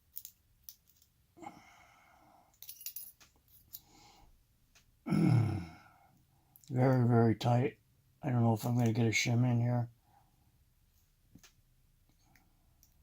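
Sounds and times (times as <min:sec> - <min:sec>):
small metallic clicks: 0:00.0 - 0:01.2
voiced sigh: 0:01.4 - 0:02.4, 0:05.1 - 0:06.1
breathy exhale: 0:01.4 - 0:02.5.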